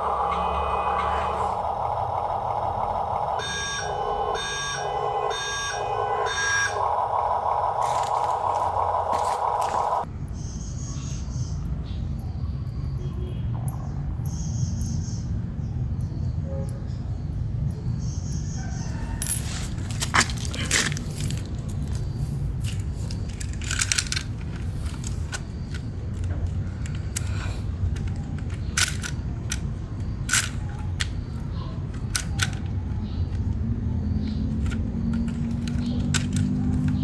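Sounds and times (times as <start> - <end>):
small electric motors humming: 7.8 - 10.0
small hard objects clicking: 34.2 - 37.0.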